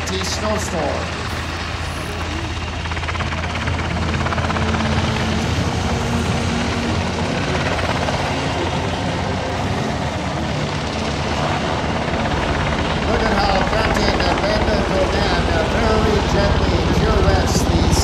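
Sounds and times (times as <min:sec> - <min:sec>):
helicopter drone flying by: 0:00.0 - 0:18.0.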